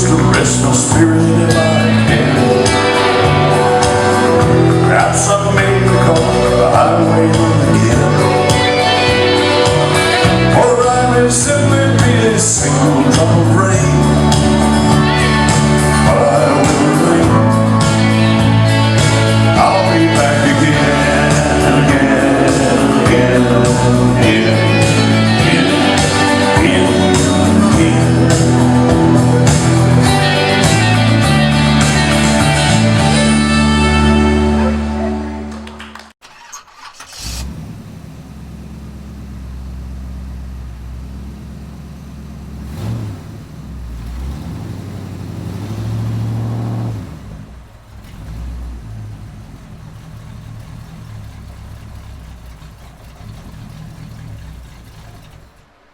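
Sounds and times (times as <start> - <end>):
man singing: 0.0 - 35.3
walking bass line: 0.0 - 36.1
country band music: 0.0 - 36.2, 48.1 - 55.9.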